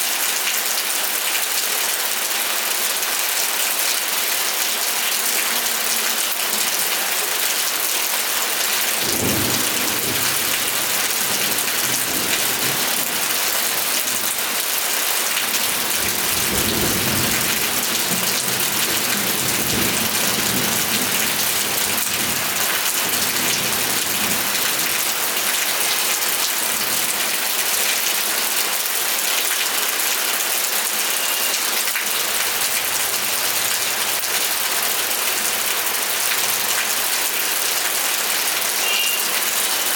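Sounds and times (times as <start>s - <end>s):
steady rain falling: 0.0s - 39.9s
thunder rumbling: 9.0s - 13.6s.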